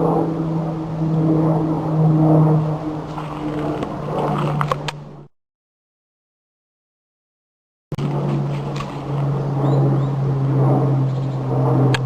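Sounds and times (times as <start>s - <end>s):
clicks and crackles: 3.1s - 5.0s.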